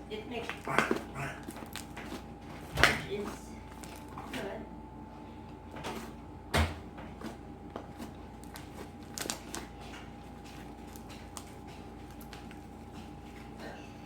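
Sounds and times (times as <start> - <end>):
slime crackling and popping: 8.4 - 9.8.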